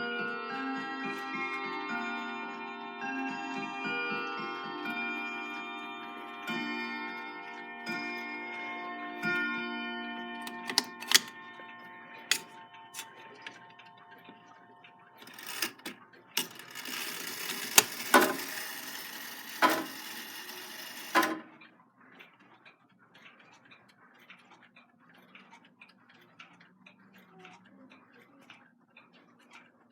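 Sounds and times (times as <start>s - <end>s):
clock ticking: 10.5s - 11.3s, 12.3s - 13.1s, 15.2s - 21.6s
rattling whirring with sharp clicks: 10.5s - 11.3s, 12.3s - 13.1s, 15.2s - 21.6s
chiming clock bells ringing: 15.2s - 21.3s.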